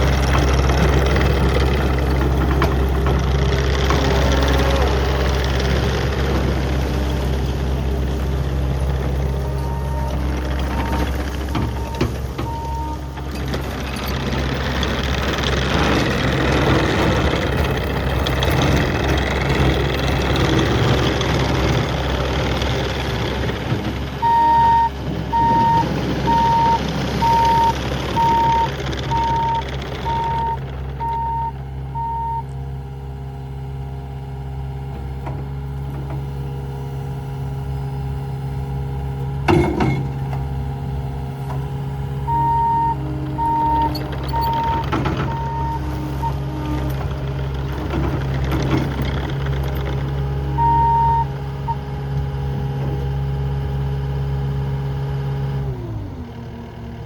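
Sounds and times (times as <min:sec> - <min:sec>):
diesel engine running: 0:00.0 - 0:57.0
backup alarm beeping: 0:09.4 - 0:13.1, 0:24.2 - 0:32.5, 0:42.3 - 0:46.5, 0:50.6 - 0:51.8.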